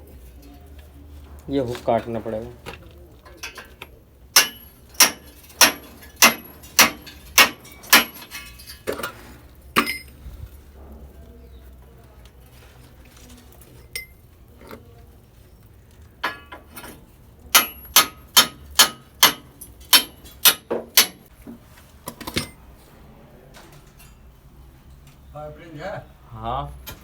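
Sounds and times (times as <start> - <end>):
hammer striking metal: 4.4 - 8.7, 9.8 - 10.1, 17.5 - 21.3.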